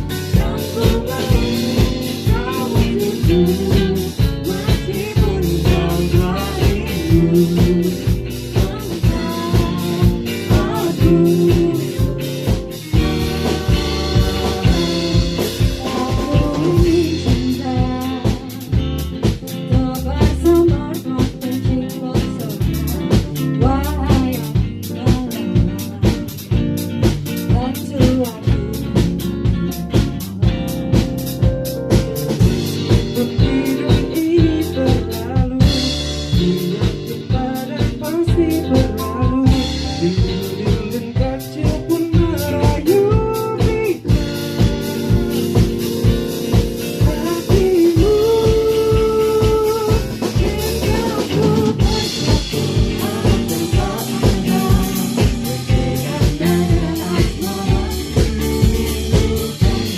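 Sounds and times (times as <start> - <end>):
pitch-bending lead melody: 0.0 - 18.0
bass: 0.0 - 59.9
drum kit beat: 0.0 - 59.9
guitar: 0.0 - 59.9.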